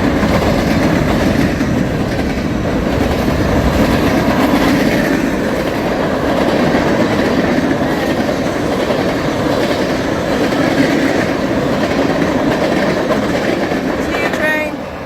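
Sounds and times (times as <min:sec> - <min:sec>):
freight train wheels clattering: 0:00.0 - 0:14.8.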